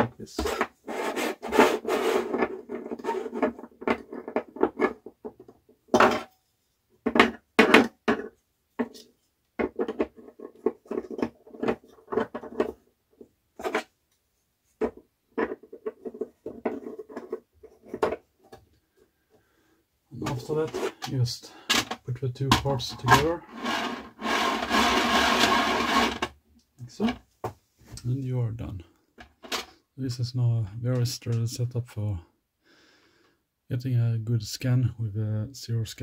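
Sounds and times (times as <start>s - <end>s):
light scraping: 20.2s - 21.6s, 22.4s - 26.3s.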